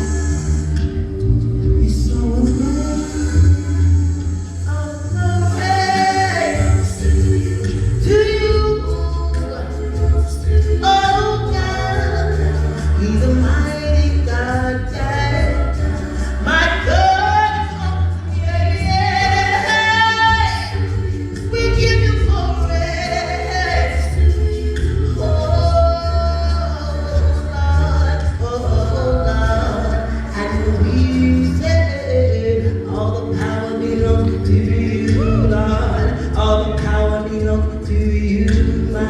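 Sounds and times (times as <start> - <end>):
gospel singers over a band: 0.0 - 39.0
steady bass line: 0.0 - 39.0.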